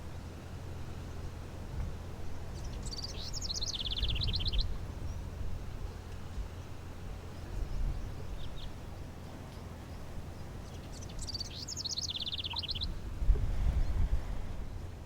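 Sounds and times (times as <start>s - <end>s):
low outdoor rumble: 0.0s - 15.0s
songbird chirping and trilling: 2.0s - 13.1s.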